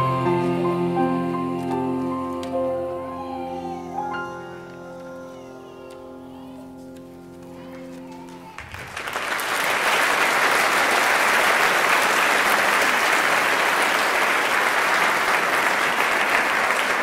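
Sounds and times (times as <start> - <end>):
audience applauding: 7.5 - 17.0.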